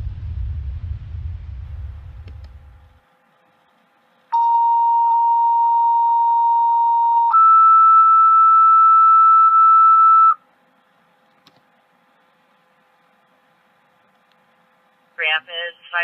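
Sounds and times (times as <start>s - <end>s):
vehicle low rumble: 0.0s - 3.0s
two-tone paging tones: 4.4s - 10.4s.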